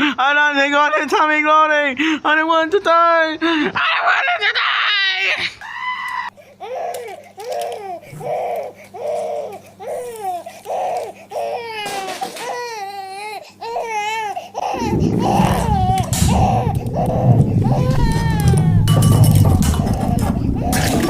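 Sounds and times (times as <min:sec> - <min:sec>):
high voice crying: 0:14.6 - 0:20.8
loud low rumble: 0:14.8 - 0:21.0.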